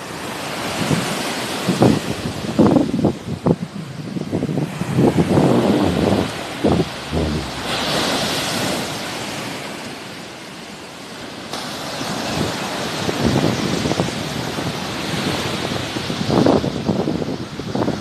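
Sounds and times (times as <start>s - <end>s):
sea waves washing on shore: 0.0s - 18.0s
wind rumbling on microphone: 1.7s - 9.1s.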